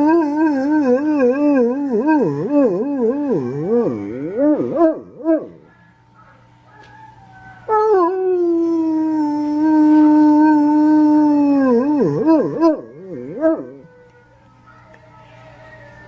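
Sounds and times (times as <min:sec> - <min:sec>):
dog howling: 0:00.0 - 0:16.0.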